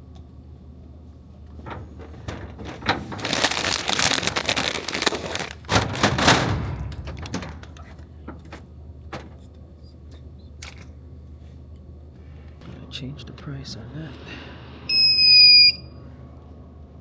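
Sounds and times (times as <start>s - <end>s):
crinkling and rustling: 1.4s - 10.9s.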